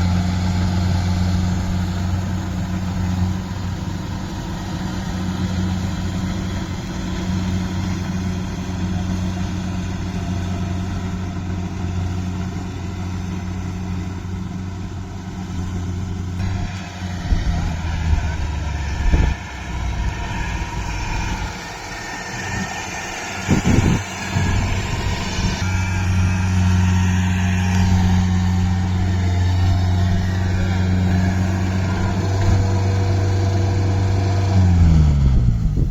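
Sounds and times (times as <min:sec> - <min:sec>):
diesel engine humming: 0:00.0 - 0:35.9
rushing rattling noise: 0:16.3 - 0:34.7.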